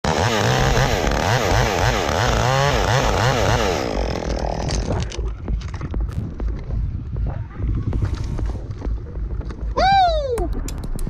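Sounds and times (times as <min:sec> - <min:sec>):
chainsaw engine revving: 0:00.0 - 0:05.3.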